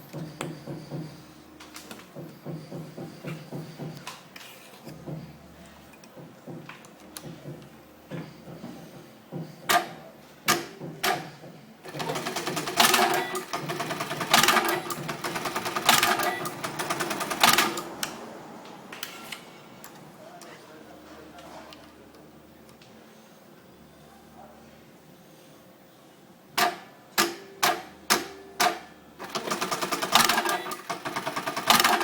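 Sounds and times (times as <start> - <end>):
sewing machine stitching: 10.5 - 18.1, 29.2 - 32.0
sewing machine sharp clacks: 11.9 - 18.1, 26.6 - 32.0.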